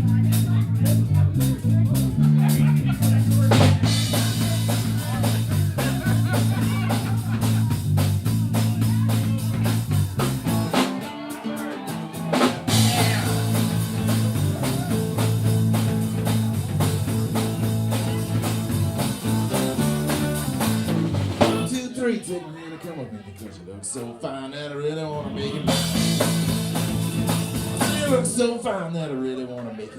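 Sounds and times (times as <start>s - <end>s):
electric guitar: 0.0s - 21.7s
bass line: 0.0s - 21.8s, 25.1s - 28.6s
drum kit steady beat: 0.0s - 21.8s, 25.2s - 28.4s.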